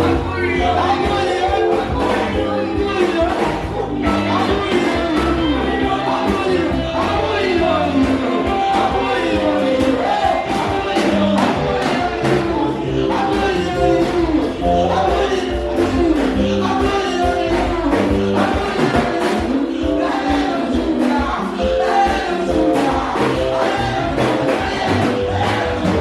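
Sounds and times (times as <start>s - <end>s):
band playing drums and bass: 0.0s - 26.0s
voices singing: 0.0s - 26.0s.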